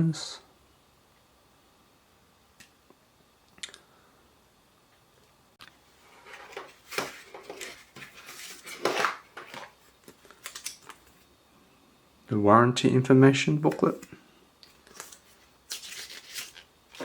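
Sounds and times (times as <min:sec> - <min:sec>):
packaging rustling and crinkling: 0:06.2 - 0:11.3, 0:14.7 - 0:17.0.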